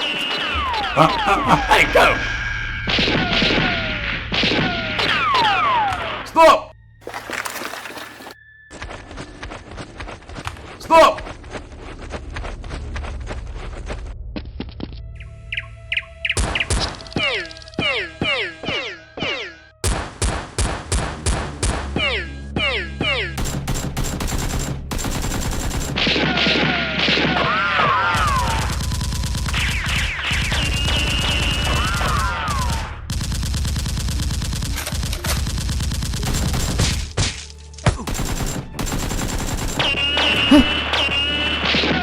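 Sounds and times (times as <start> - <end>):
rapid gunfire: 23.4 - 27.4, 28.2 - 37.2, 38.0 - 41.1.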